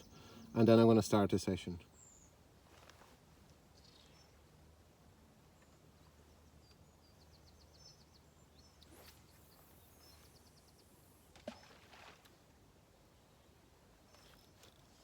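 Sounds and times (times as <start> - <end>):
faint high bird chirps: 5.6 - 11.8.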